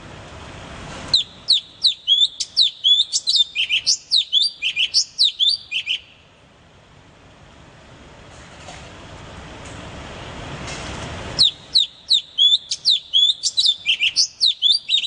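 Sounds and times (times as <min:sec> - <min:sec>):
small bird chirping: 0:01.1 - 0:06.2, 0:11.4 - 0:15.0.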